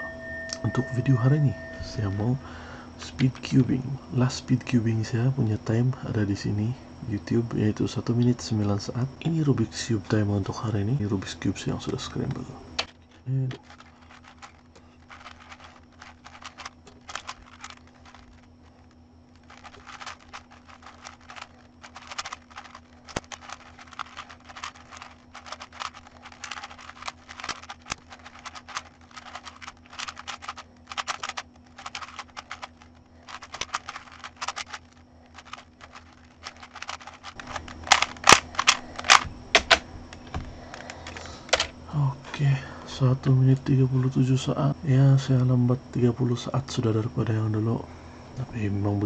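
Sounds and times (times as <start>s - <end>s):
puzzle cube plastic clicks: 11.7s - 42.4s.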